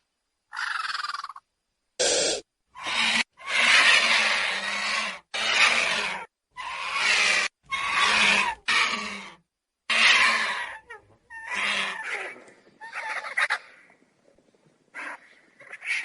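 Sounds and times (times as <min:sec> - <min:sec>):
vulture harsh hissing rasps: 0:02.0 - 0:09.0.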